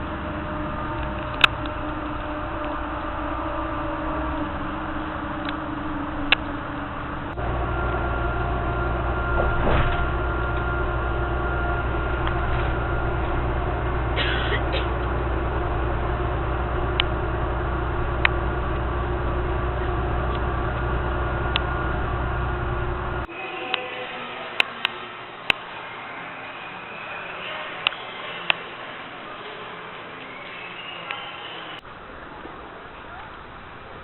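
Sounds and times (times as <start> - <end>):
vehicle interior rumble: 0.0 - 23.3.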